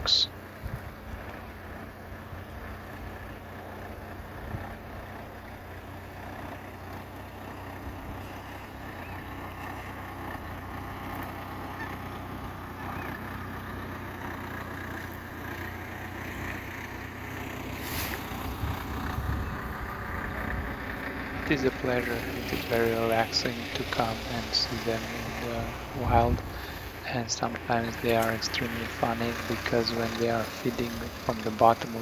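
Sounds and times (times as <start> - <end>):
faint waterbird calls: 8.3 - 10.0, 11.1 - 13.4
steady low rumble: 16.7 - 32.0.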